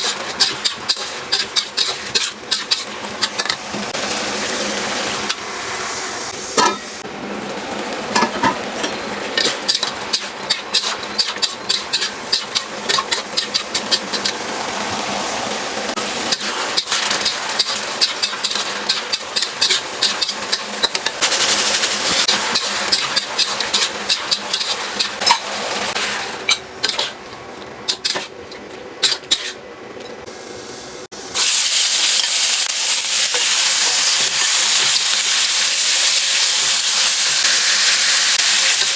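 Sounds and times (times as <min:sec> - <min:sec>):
spatula scraping a pan: 0:00.0 - 0:03.7, 0:08.2 - 0:14.4, 0:16.3 - 0:27.3, 0:27.9 - 0:29.6
food sizzling in a pan: 0:00.0 - 0:27.2, 0:30.7 - 0:38.9
loud hiss of hot oil: 0:31.2 - 0:38.9.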